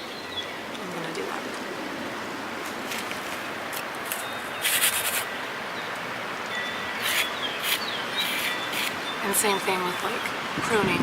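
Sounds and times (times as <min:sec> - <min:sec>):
strong wind through trees: 0:00.0 - 0:11.0
crackling rustle: 0:00.7 - 0:09.2.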